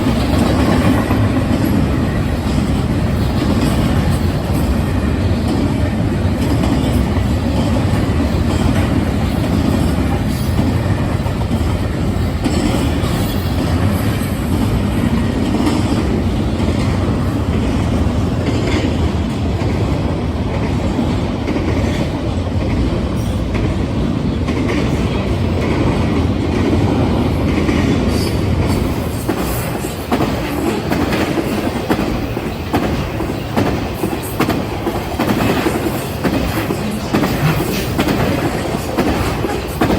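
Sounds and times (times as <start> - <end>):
train wheels rumbling on rail: 0.0 - 39.9
clicking over rail joints: 24.5 - 39.9.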